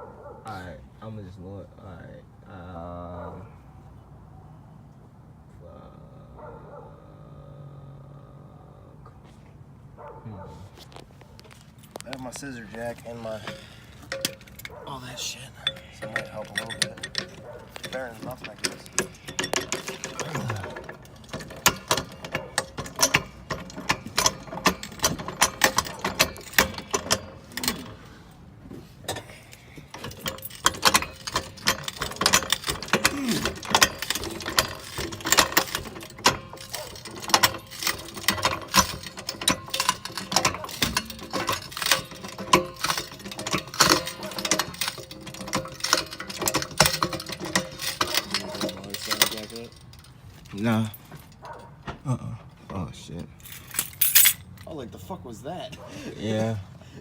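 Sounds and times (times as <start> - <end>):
scissor jack clicking and squeaking: 15.7 - 28.0, 30.0 - 50.2.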